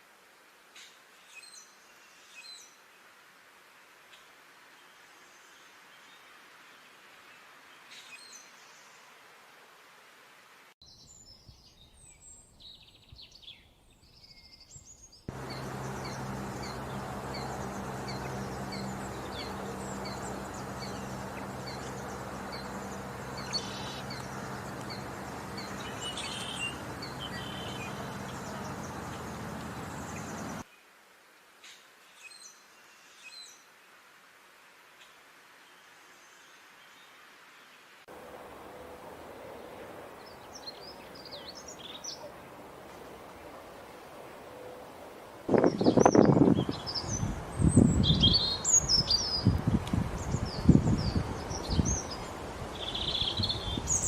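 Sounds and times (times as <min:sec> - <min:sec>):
small birds chirping and singing: 0:10.8 - 0:30.6, 0:45.5 - 0:54.0
steady rushing noise with low hum: 0:15.3 - 0:30.6.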